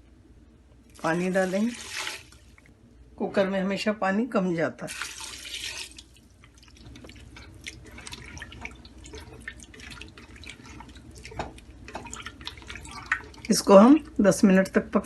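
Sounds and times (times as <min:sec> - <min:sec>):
water dripping into a pot: 0:04.9 - 0:14.2.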